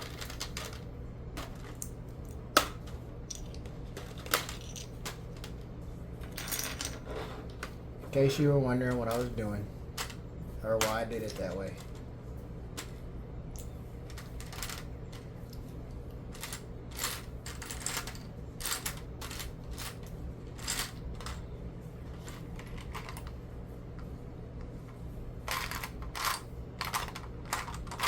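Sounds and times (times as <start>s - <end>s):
plastic bricks clicking and clattering: 0.0s - 0.8s, 1.4s - 5.5s
steady low hum: 0.0s - 28.0s.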